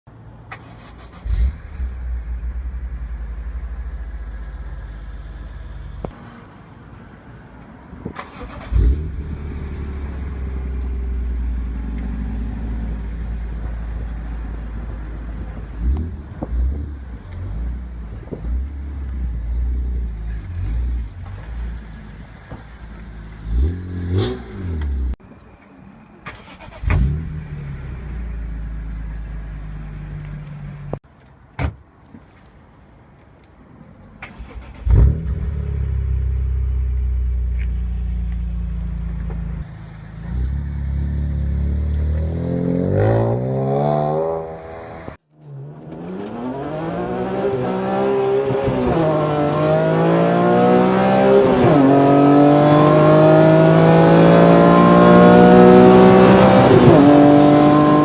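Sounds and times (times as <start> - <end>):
car engine starting and idling: 0.2 - 6.2, 8.0 - 25.2, 26.2 - 31.0, 34.1 - 45.0
engine revving: 0.6 - 2.6, 8.2 - 13.2, 23.3 - 25.2, 34.4 - 37.0, 40.2 - 58.0.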